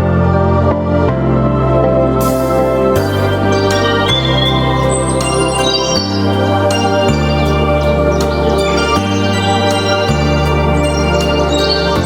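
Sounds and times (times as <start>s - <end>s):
electronic organ chords: 0.0s - 12.0s.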